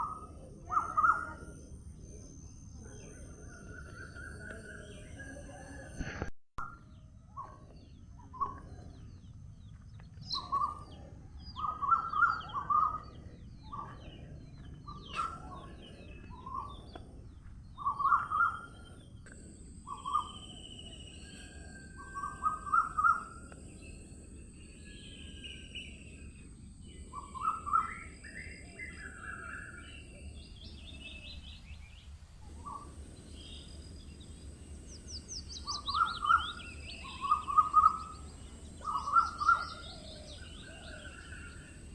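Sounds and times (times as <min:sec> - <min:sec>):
faint steady high tone: 0:00.0 - 0:31.9
low steady background: 0:00.0 - 0:41.9
songbirds singing: 0:00.0 - 0:41.9.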